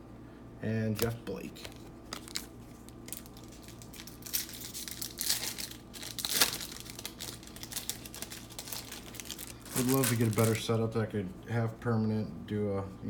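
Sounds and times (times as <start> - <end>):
card pack wrapper crinkling: 1.0 - 10.8.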